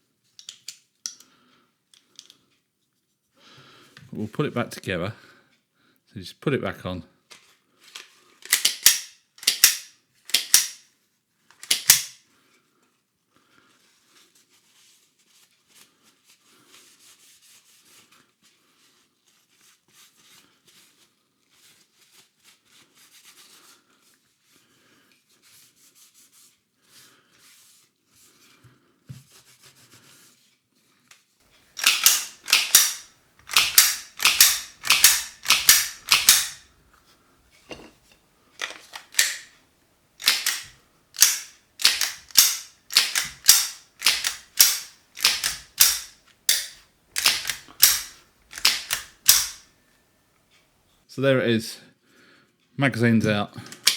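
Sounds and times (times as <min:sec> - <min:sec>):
pistol slide clacking: 0:08.4 - 0:10.8, 0:11.6 - 0:12.2, 0:31.8 - 0:36.7, 0:38.6 - 0:39.6, 0:40.2 - 0:49.7
faint handling noise: 0:31.1 - 0:49.7.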